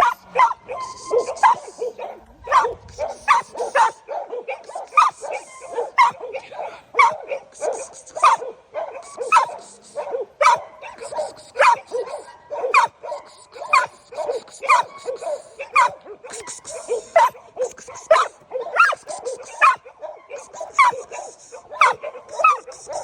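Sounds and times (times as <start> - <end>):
dog barking: 0.0 - 23.0
dog yipping and whining: 18.1 - 19.8.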